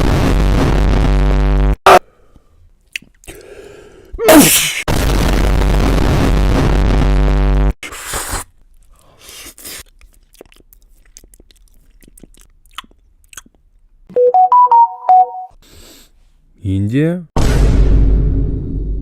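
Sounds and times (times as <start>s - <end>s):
loud distorted noisy blast: 4.9s - 7.7s, 17.4s - 19.0s
electronic beep tune: 14.1s - 15.5s.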